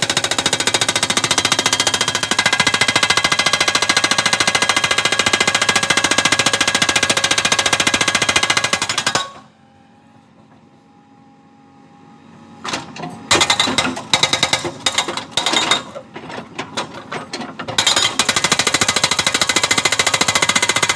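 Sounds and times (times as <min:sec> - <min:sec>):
rapid mechanical hammering: 0:13.3 - 0:15.8, 0:17.8 - 0:20.9.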